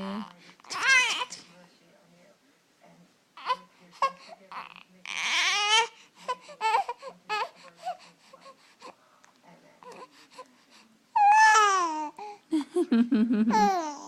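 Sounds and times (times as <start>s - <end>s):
baby fussing and crying: 0.0s - 1.5s, 3.4s - 9.0s, 9.8s - 12.7s, 13.5s - 14.0s.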